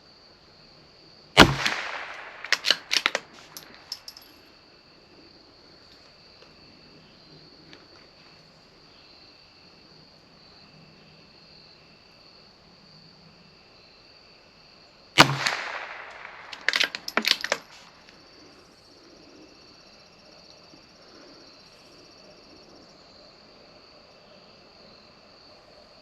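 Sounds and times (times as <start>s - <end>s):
crickets chirring: 0.0s - 26.0s
rifle shot with echo: 1.4s - 4.2s, 15.2s - 18.0s
metallic bolt clicks: 1.4s - 4.3s, 15.2s - 17.8s.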